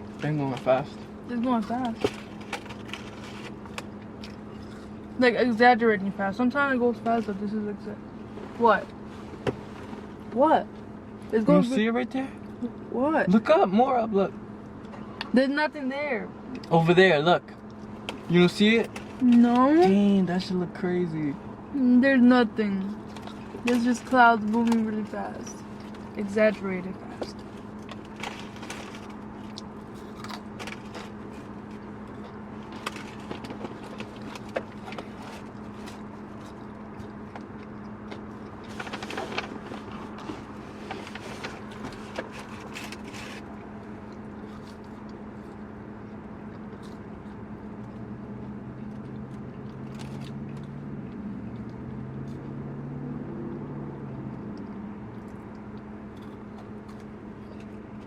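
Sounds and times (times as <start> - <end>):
car engine idling hum: 0.0 - 58.0
low hum: 17.4 - 58.0
rustling: 38.6 - 43.5.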